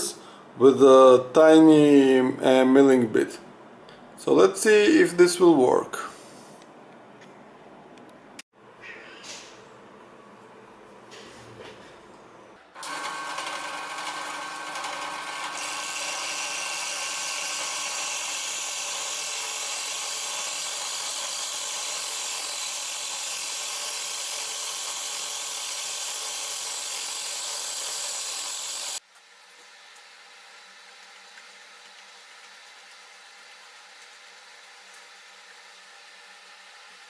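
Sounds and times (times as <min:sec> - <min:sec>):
drill press motor whine: 0:12.7 - 0:29.0
milling bit cutting metal: 0:12.8 - 0:29.0.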